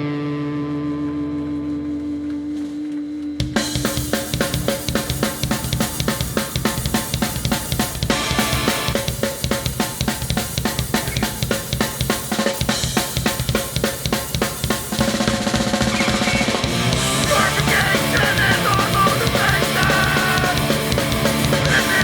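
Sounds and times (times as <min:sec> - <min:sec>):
ringing electric guitar chord: 0:00.0 - 0:03.7
punk band playing fast: 0:03.4 - 0:22.0.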